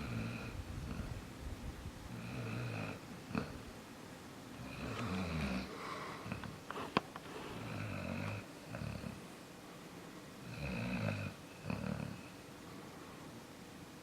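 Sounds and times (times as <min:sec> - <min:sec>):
puppy snoring: 0:00.0 - 0:01.2, 0:02.1 - 0:03.7, 0:04.6 - 0:06.6, 0:07.3 - 0:09.2, 0:10.4 - 0:12.4.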